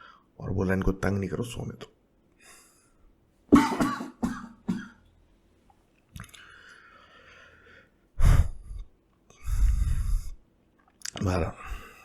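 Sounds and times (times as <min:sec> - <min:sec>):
person coughing: 0:03.5 - 0:05.0
faint breathy hiss: 0:06.2 - 0:10.6.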